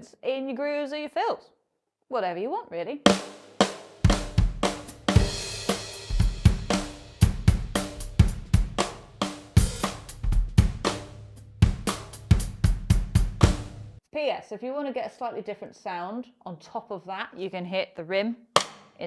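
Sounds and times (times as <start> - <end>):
drum kit groove: 3.1 - 14.0, 18.6 - 18.9
cymbal crash: 5.1 - 7.2
cross-stick hits on snare rim: 18.6 - 19.0.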